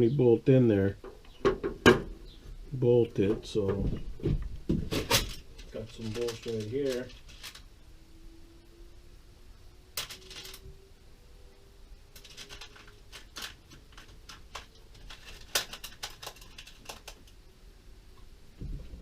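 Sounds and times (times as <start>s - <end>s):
small metal bolts clinking: 10.0s - 10.7s, 12.2s - 17.1s.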